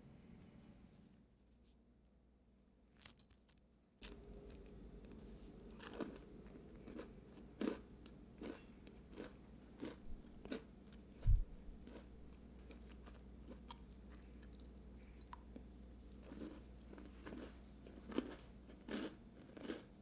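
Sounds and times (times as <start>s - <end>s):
crisp chewing crunches: 3.0s - 20.0s
dull low thump: 11.2s - 11.7s.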